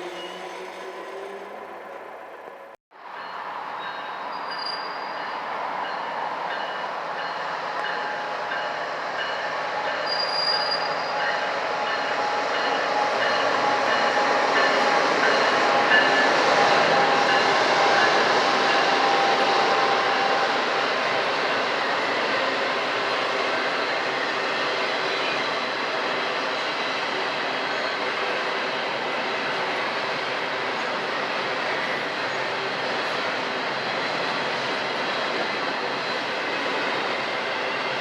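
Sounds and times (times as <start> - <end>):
train wheels rumbling on rails: 3.8 - 38.0
high wheel squeal: 4.0 - 5.4, 9.8 - 14.1.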